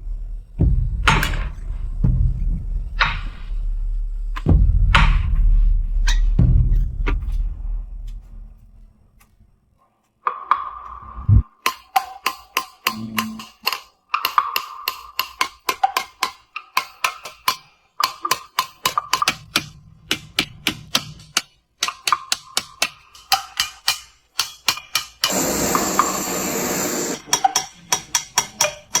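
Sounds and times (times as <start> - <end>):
small hammer tapping metal: 11.6 - 25.4, 27.0 - 29.0.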